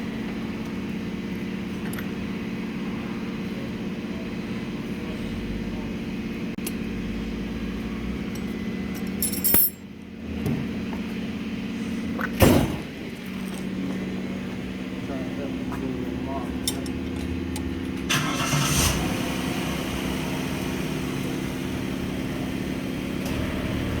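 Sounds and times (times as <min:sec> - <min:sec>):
metallic clatter of tools: 0:08.3 - 0:09.8.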